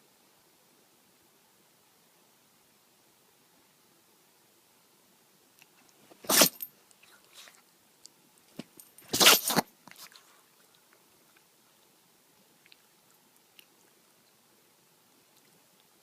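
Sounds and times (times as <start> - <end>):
dog snuffling: 6.1 - 7.6
dog sneezing: 6.2 - 6.7, 9.0 - 9.6.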